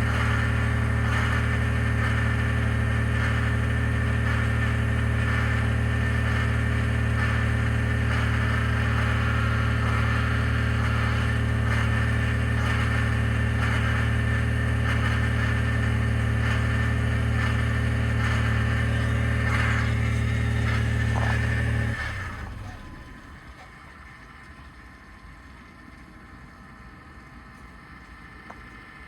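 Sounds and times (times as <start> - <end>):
truck engine idling: 0.0 - 29.0
rough grinding noise: 16.6 - 22.5.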